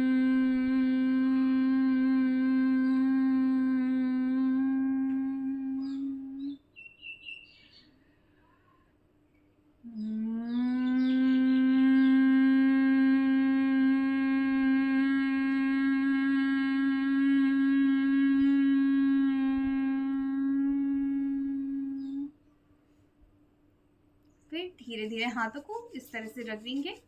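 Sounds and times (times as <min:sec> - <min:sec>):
woman humming nasally: 0:00.0 - 0:06.6, 0:09.8 - 0:22.4.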